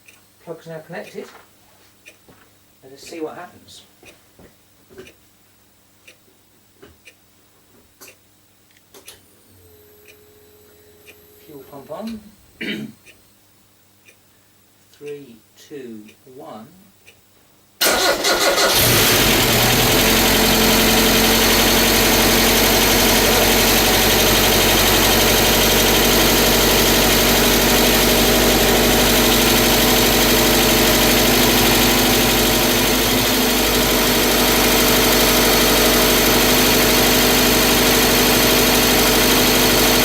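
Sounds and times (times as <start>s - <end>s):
engine cranking and idling: 17.8s - 40.0s.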